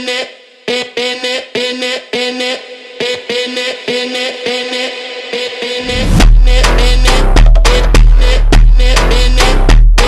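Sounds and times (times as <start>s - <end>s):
electronic music with heavy bass: 2.1s - 10.0s.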